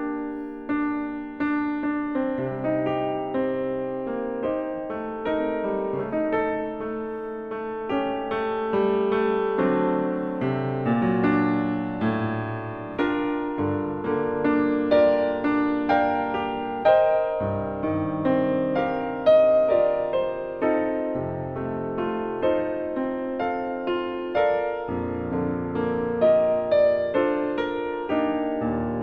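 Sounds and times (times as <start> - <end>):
piano music: 0.0 - 29.0.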